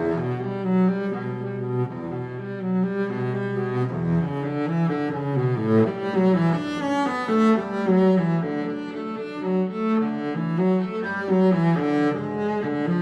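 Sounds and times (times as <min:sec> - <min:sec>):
bowed strings melody: 0:00.0 - 0:13.0.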